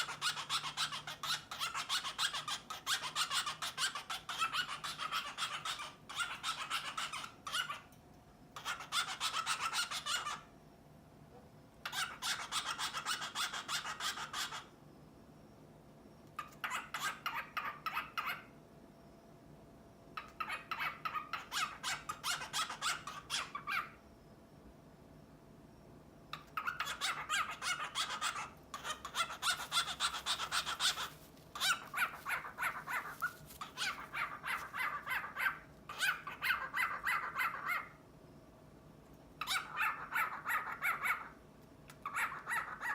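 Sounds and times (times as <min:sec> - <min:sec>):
cockatiel raspy gurgling chatter: 0:28.0 - 0:37.8.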